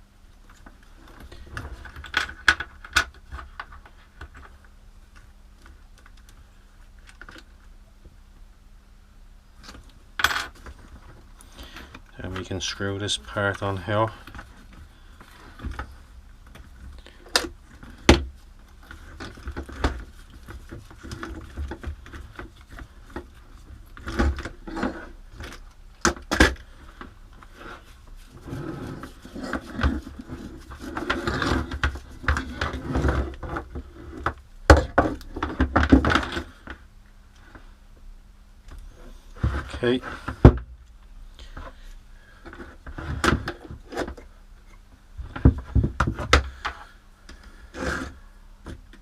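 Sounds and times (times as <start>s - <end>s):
scraping and rubbing: 11.8s - 25.6s, 26.7s - 36.7s.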